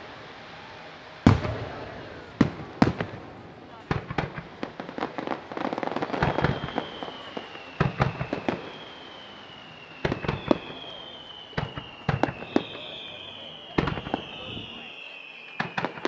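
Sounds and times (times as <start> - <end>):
fireworks bursts and booms: 0.0 - 16.0
fireworks crackles: 0.0 - 16.0
high whistles gliding down: 4.9 - 16.0.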